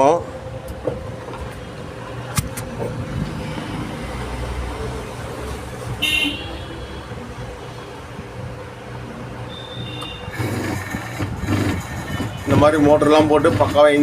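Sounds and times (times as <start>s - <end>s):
street traffic: 0.0s - 14.0s
vehicle horn toot: 6.0s - 7.0s, 9.5s - 10.8s.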